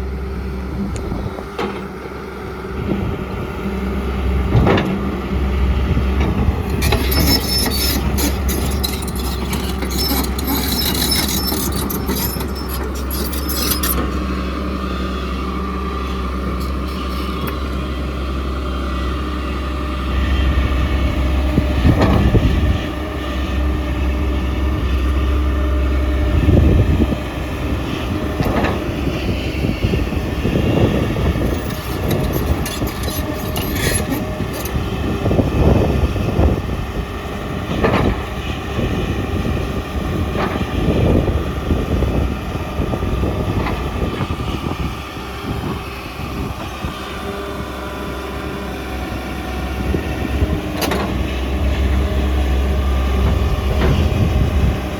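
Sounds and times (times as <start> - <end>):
excavator diesel engine running: 0.0 - 54.9
digging knocks and scrapes: 6.6 - 14.5, 16.0 - 17.9, 30.8 - 34.8.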